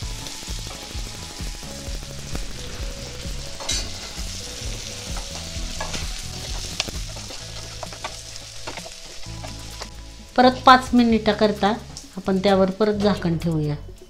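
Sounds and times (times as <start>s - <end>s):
food sizzling in a pan: 0.0s - 13.4s
utensil scraping a pan: 3.4s - 9.9s.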